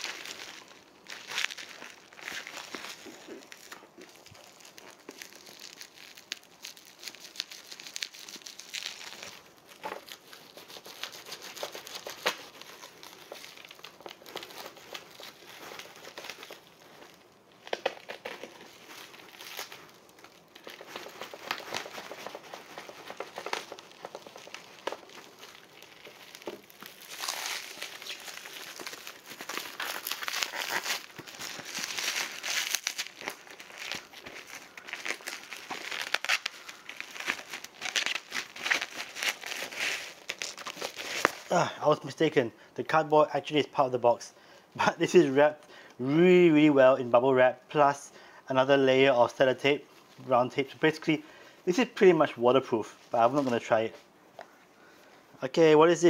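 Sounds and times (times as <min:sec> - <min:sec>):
bubble wrap crinkling: 0:00.0 - 0:42.4.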